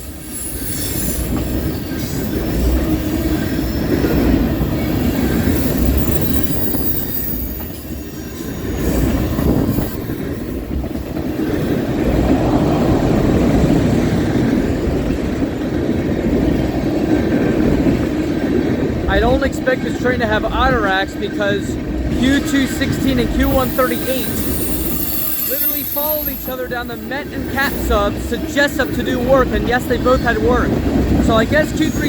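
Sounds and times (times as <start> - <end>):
faint high wheel squeal: 0.0 - 2.4, 3.0 - 10.6, 23.4 - 30.3
freight train wheels rumbling on rail: 0.0 - 32.0.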